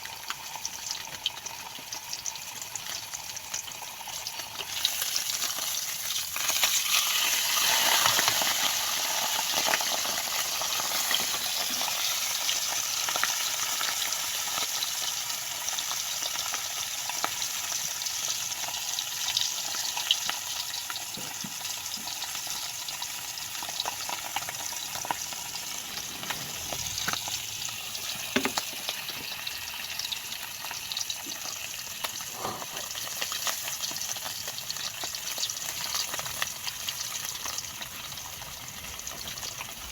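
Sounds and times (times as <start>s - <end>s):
fish sizzling in hot oil: 0.0s - 39.9s
oil popping: 21.4s - 34.2s.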